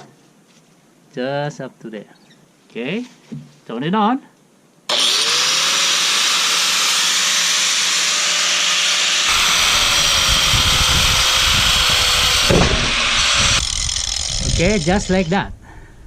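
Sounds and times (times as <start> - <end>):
angle grinder whining: 4.9 - 15.3.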